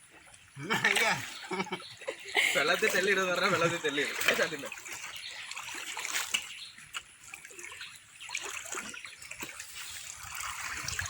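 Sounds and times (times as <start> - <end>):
stream trickling and gurgling: 0.0 - 11.0.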